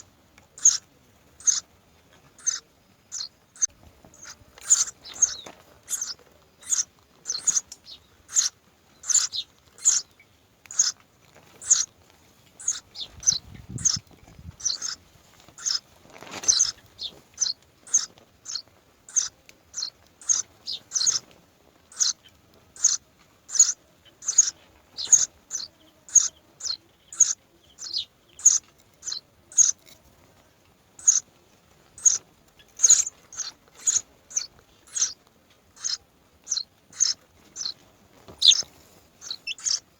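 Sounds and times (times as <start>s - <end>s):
bird chirping: 0.6s - 11.9s, 12.6s - 30.0s, 31.0s - 31.3s, 31.9s - 39.9s
low rustle: 29.8s - 39.9s.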